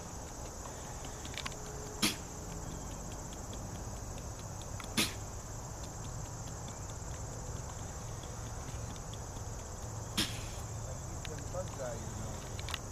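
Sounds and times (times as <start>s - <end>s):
high chorus of insects: 0.0s - 12.9s
deer sneezing: 10.2s - 10.6s.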